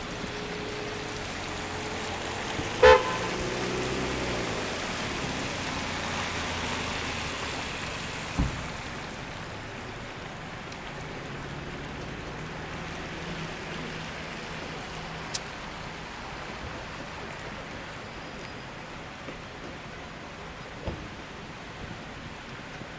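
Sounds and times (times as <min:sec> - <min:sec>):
car traffic passing: 0:00.0 - 0:22.9
rain on a street: 0:00.0 - 0:22.9
car horn honk: 0:02.7 - 0:03.8
dull thump: 0:08.3 - 0:09.0.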